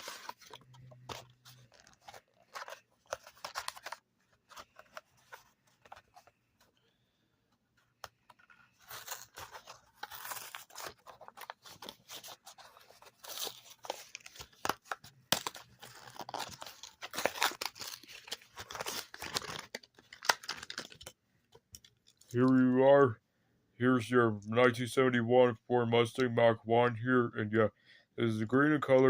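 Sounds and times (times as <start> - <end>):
cardboard and plastic packaging ripping: 0.0 - 5.0, 8.4 - 21.1.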